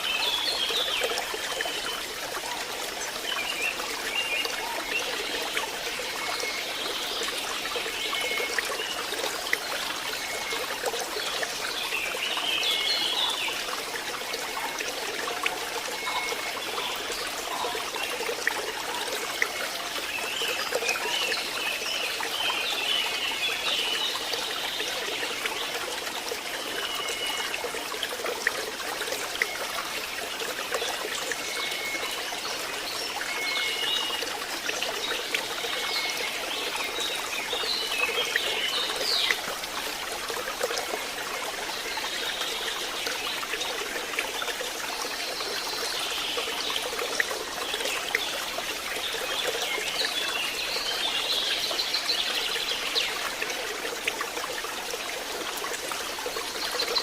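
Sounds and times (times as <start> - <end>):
stream water trickling: 0.0 - 57.0.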